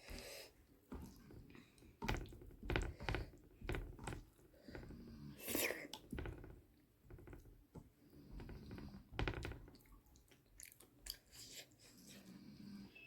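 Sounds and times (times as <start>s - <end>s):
close chewing with mouth clicks: 9.9s - 12.2s.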